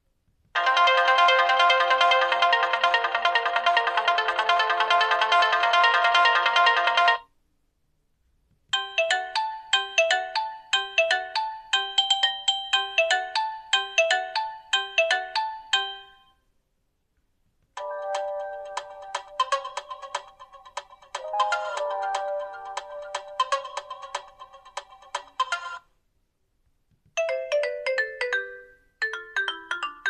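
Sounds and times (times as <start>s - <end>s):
phone ringtone with quick notes: 21.2s - 23.6s.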